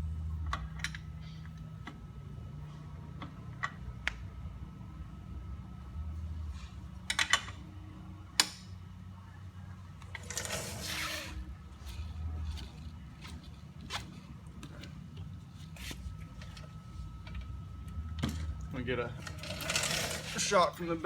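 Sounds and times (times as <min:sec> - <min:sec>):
steady low hum: 0:00.0 - 0:21.0
rough scraping rub: 0:10.3 - 0:13.4.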